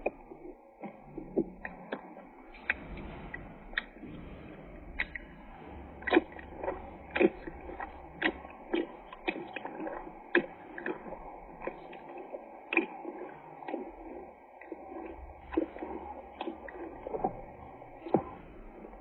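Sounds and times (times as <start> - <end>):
pet crunching fruit: 0.8 - 19.0.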